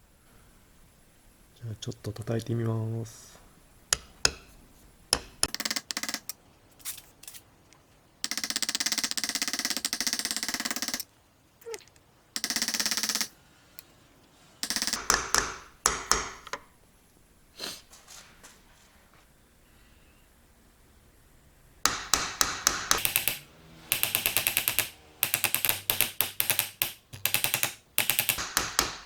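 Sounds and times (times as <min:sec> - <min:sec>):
hammer tapping metal part: 0:03.9 - 0:06.3, 0:14.6 - 0:16.7, 0:21.8 - 0:29.0.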